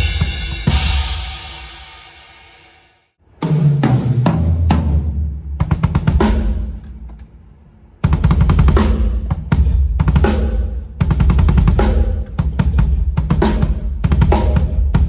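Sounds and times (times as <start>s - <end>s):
tom drum fill: 0.0s - 1.9s, 3.4s - 7.1s, 8.0s - 15.0s
cymbal hits: 0.0s - 3.0s.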